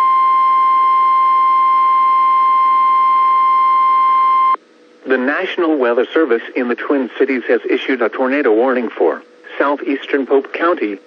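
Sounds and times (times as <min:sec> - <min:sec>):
steady alarm tone: 0:00.0 - 0:04.6.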